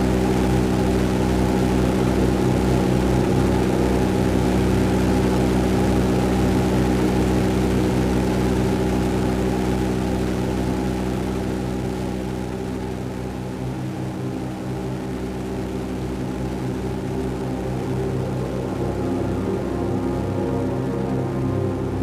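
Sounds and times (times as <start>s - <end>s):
steady mechanical hum: 0.0s - 22.0s.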